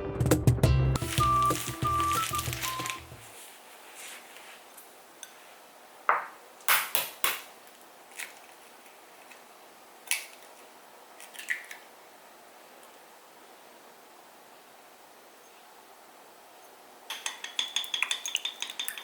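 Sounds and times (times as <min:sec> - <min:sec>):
dishes and utensils clinking: 0:17.1 - 0:19.0.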